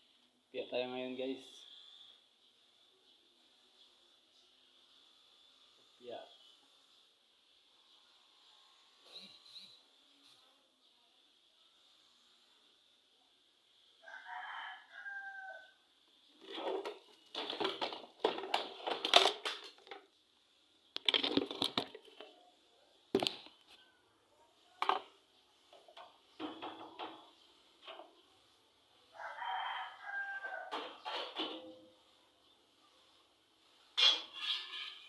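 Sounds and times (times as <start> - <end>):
rooster crowing: 14.0 - 15.8, 29.1 - 31.0.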